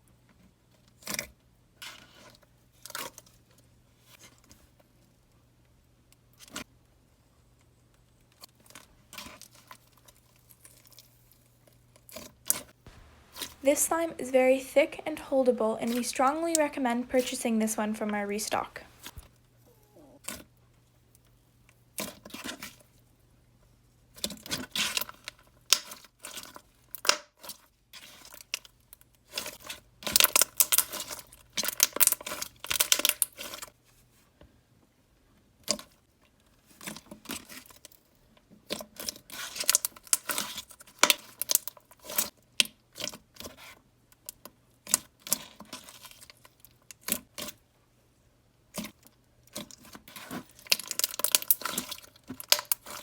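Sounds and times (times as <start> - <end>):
slime crackling and popping: 38.7 - 43.2, 49.5 - 53.0.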